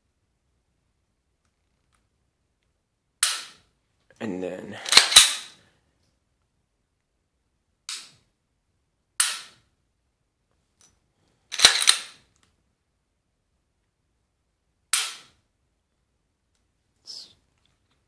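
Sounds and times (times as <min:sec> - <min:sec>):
pistol slide racking: 0:04.9 - 0:05.5, 0:11.5 - 0:12.2.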